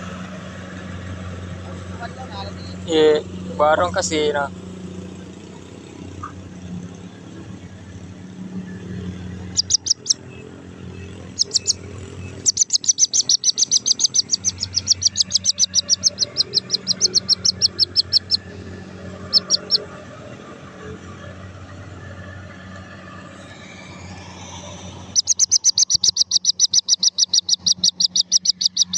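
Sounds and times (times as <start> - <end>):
quail chirping: 9.4 - 10.3, 10.9 - 19.9, 25.1 - 28.9.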